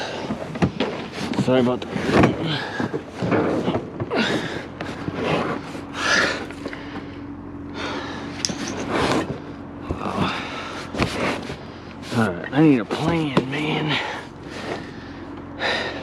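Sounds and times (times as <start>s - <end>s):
man breathing hard: 0.0s - 0.5s, 4.1s - 5.1s, 5.8s - 8.8s, 13.9s - 16.0s.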